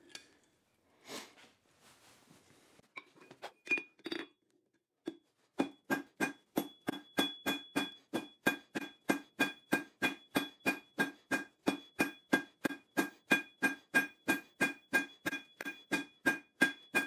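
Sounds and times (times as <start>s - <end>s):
hammer striking steel on anvil: 5.6s - 17.0s.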